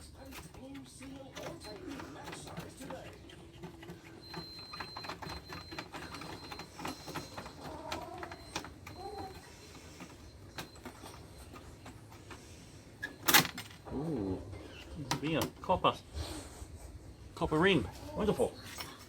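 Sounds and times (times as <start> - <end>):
small parts clicking and tapping: 0.0 - 12.5.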